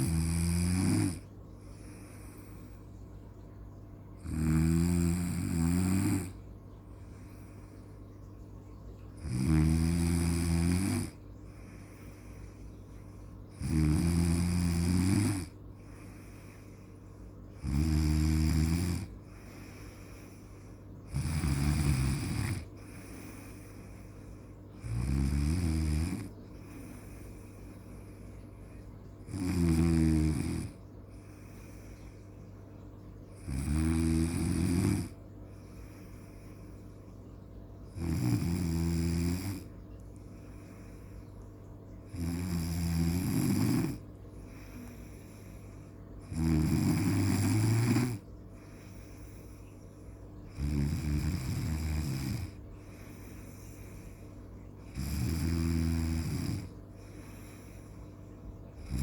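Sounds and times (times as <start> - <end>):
snoring: 0.0 - 1.3, 4.2 - 6.4, 9.2 - 11.2, 13.5 - 15.6, 17.6 - 20.2, 21.1 - 24.0, 24.8 - 27.1, 29.2 - 30.8, 33.4 - 35.1, 37.9 - 39.7, 42.1 - 45.5, 46.2 - 49.6, 50.5 - 54.2, 54.8 - 57.9, 58.8 - 59.0.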